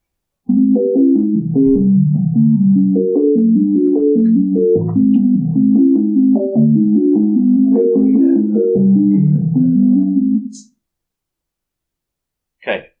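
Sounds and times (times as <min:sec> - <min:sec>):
synthesized keyboard-like chords: 0:00.5 - 0:10.7.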